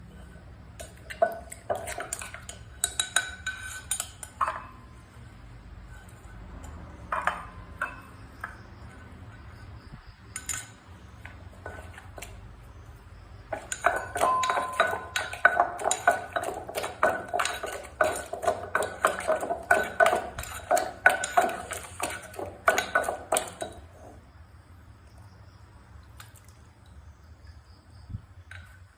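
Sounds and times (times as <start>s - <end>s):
pestle pounding in mortar: 13.5s - 23.8s.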